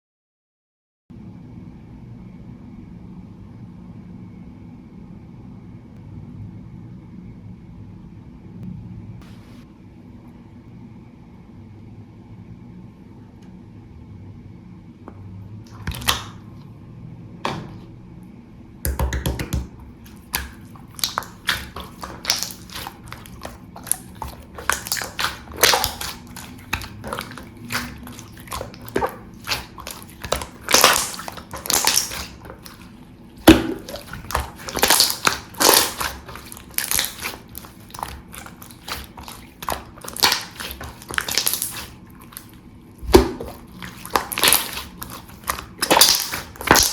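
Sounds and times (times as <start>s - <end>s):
slime squished by hand: 15.7s - 16.5s, 18.9s - 46.9s.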